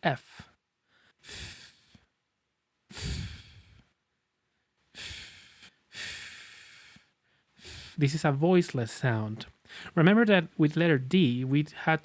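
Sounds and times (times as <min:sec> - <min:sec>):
man making f sound: 0:02.9 - 0:03.8.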